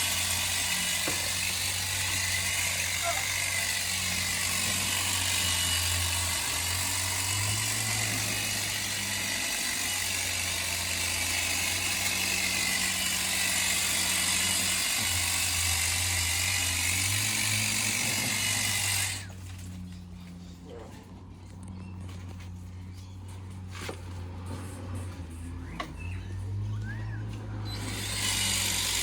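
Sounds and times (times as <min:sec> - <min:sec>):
hedge trimmer cutting: 0:00.0 - 0:19.8, 0:27.2 - 0:29.0.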